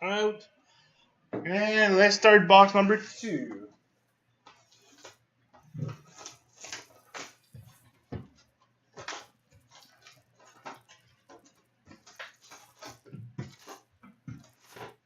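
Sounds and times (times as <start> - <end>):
foil packs rustling and crinkling: 4.6 - 15.0.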